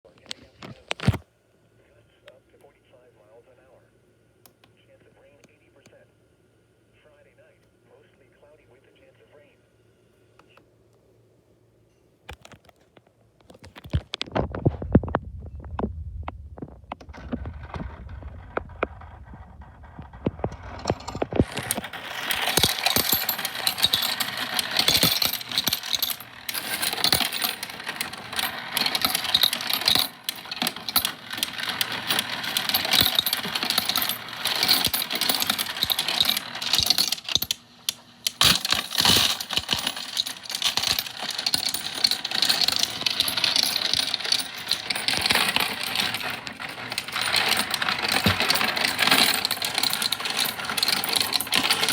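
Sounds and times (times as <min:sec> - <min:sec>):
coins clattering through coin sorter: 0:16.6 - 0:51.9.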